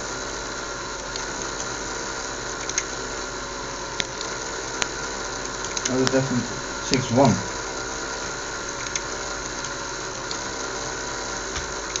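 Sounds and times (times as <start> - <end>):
small electric motor whirring: 0.0 - 12.0
sharp clicks: 2.6 - 2.9.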